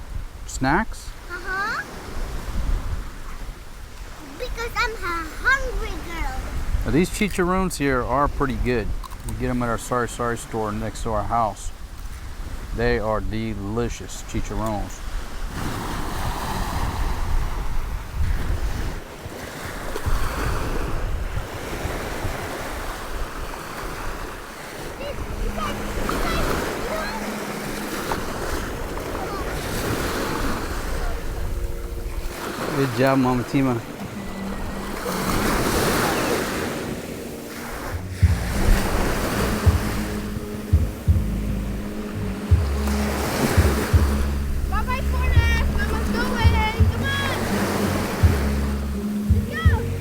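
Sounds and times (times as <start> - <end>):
surf washing onto beach: 0.0 - 50.0
wind buffeting microphone: 0.0 - 50.0.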